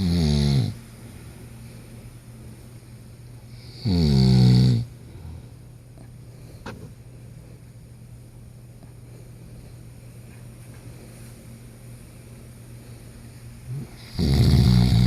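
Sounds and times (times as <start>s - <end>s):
loud snoring: 0.0s - 0.8s, 3.7s - 4.9s, 13.7s - 15.0s
steady low hum: 0.0s - 15.0s.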